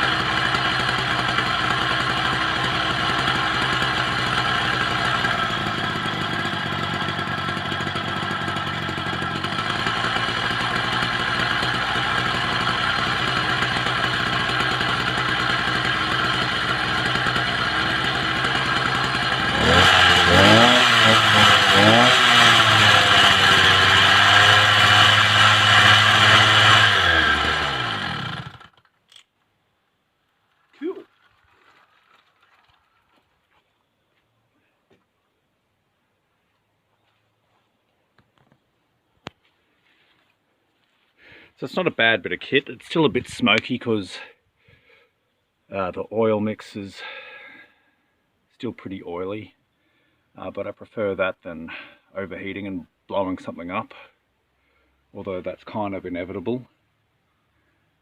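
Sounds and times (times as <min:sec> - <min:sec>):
two-stroke engine running: 0:00.0 - 0:28.8.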